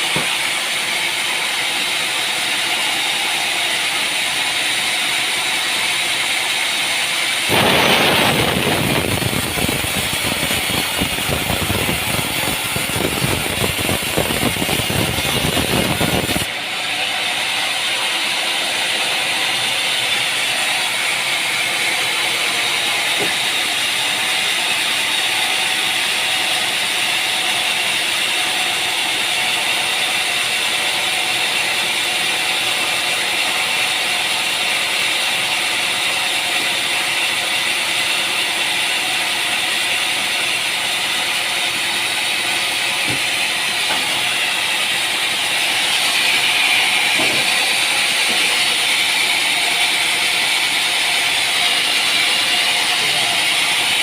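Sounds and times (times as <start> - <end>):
heavy rumbling machine: 0.0 - 26.9, 40.6 - 54.0
high-pitched mechanical noise: 0.0 - 54.0.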